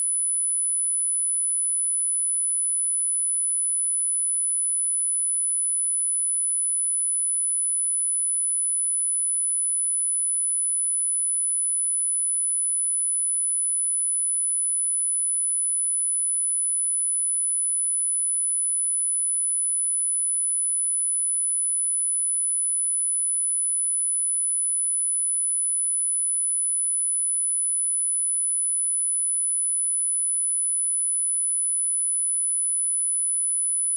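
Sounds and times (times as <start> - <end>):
high-pitched sine test tone: 24.0 - 33.9.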